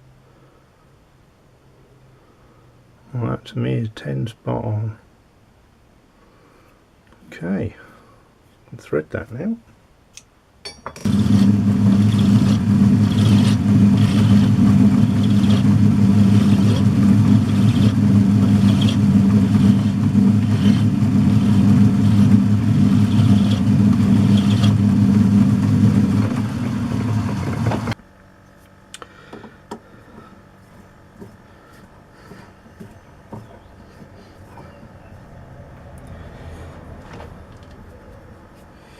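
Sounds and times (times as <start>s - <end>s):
lathe motor humming: 11.1s - 28.0s.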